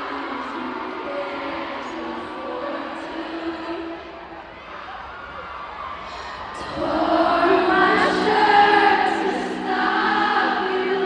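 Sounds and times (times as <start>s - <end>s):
murmur of voices: 0.0s - 11.0s
group singing together: 6.6s - 11.0s.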